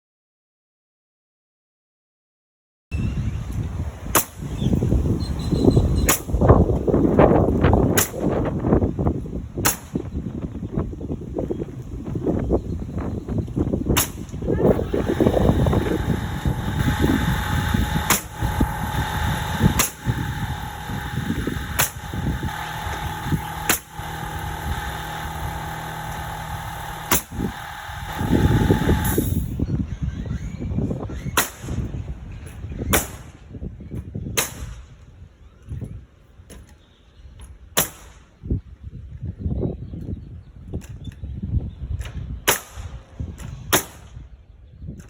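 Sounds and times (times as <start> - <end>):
nail gun shots: 4.1 - 4.5, 6.0 - 6.4, 7.9 - 8.4, 9.6 - 10.1, 13.9 - 29.5, 31.2 - 31.9, 32.8 - 33.4, 34.3 - 35.0, 37.8 - 38.3, 42.0 - 44.3
compressor motor hum: 13.8 - 29.4.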